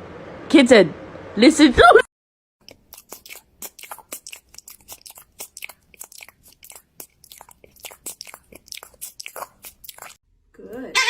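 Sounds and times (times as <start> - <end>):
animal chewing crunchy food: 2.6 - 10.2.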